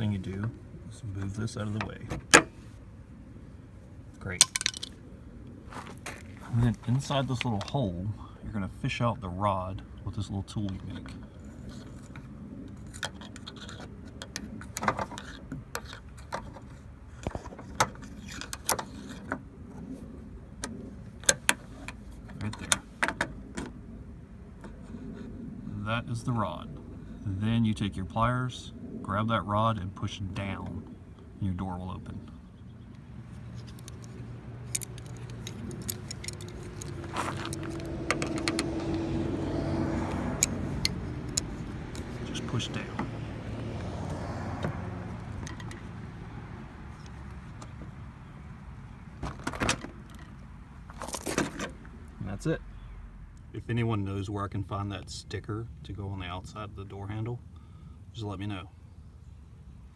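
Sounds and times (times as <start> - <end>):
low vehicle engine hum: 0.0 - 53.8
wire hook clicking against metal: 34.7 - 39.0.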